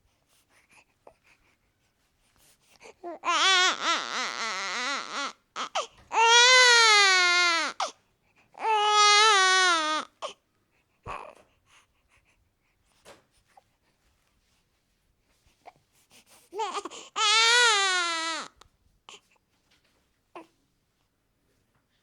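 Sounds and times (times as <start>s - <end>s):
newborn baby crying: 2.9s - 10.4s, 11.1s - 11.4s, 16.5s - 19.2s.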